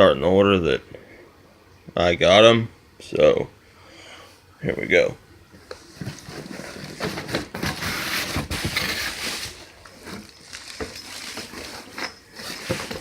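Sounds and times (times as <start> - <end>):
packaging rustling: 5.8 - 13.0.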